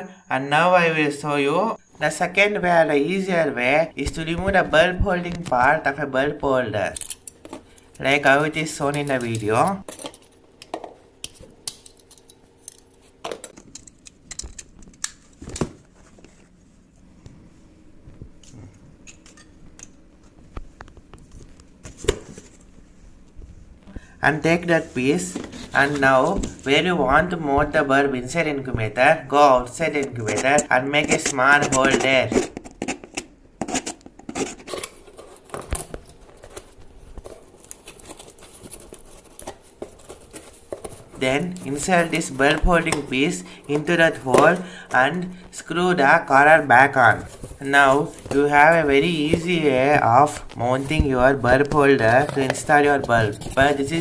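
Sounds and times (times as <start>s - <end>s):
tool scratching cardboard: 30.0s - 34.8s.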